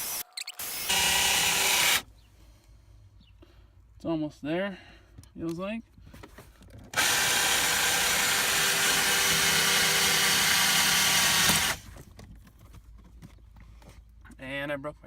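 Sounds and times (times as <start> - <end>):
power drill grinding into steel: 0.0 - 2.0, 6.9 - 11.8.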